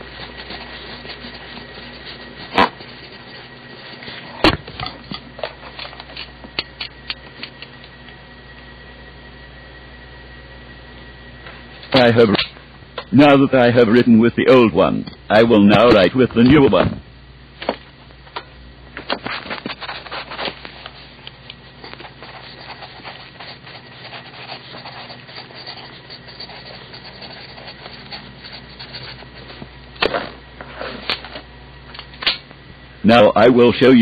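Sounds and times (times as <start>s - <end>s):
pencil scratching on paper: 0.0s - 4.4s, 19.4s - 21.0s, 21.7s - 29.7s
low steady hum: 0.0s - 34.0s.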